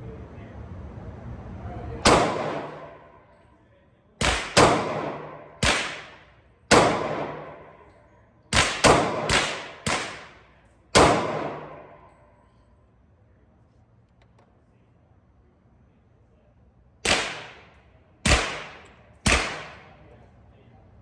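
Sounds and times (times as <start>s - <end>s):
pistol shots with echo: 2.0s - 3.2s, 4.2s - 12.2s, 17.0s - 20.1s.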